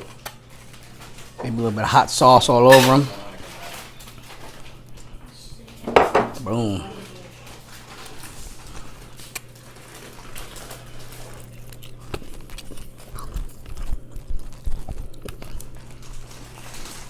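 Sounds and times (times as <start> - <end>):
person chewing: 11.0 - 16.2.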